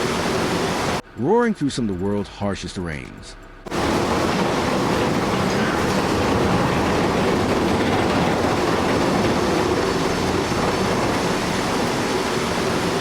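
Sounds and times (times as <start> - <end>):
heavy machinery rumbling: 3.7 - 13.0.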